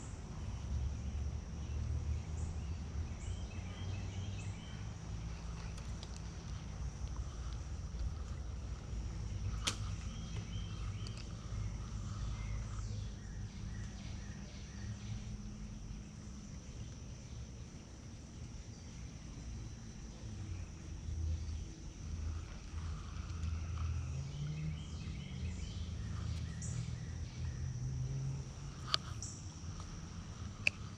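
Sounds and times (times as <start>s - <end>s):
sharp click: 9.6s - 10.0s.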